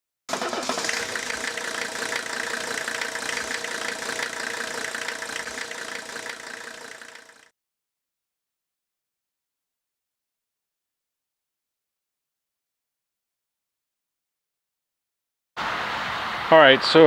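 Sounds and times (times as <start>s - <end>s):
engine running with rapid ticking: 0.3s - 7.5s.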